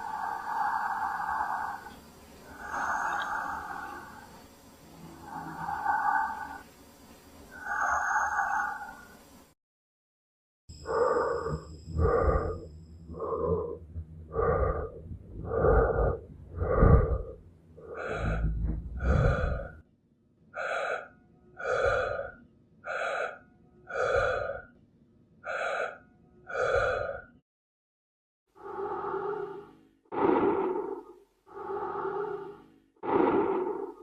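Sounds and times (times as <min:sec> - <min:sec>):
heavy raspy breathing: 0:00.0 - 0:06.7, 0:07.5 - 0:09.2, 0:10.8 - 0:19.9, 0:20.5 - 0:24.8, 0:25.4 - 0:27.4, 0:28.6 - 0:34.0
low rumble: 0:10.9 - 0:19.9.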